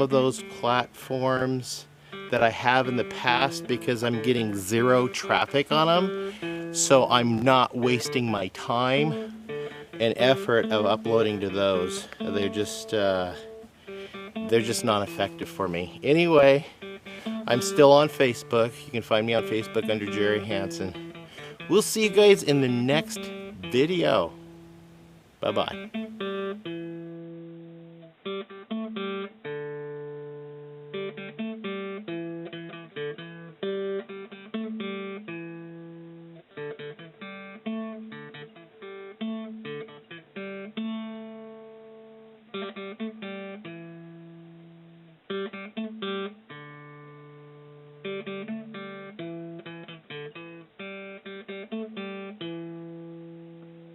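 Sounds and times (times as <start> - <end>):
acoustic guitar chords: 0.0 - 53.9.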